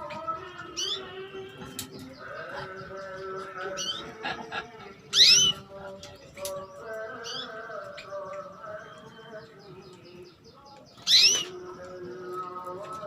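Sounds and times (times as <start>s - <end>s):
canary call notes: 0.0s - 2.8s, 5.1s - 5.7s, 11.0s - 11.6s.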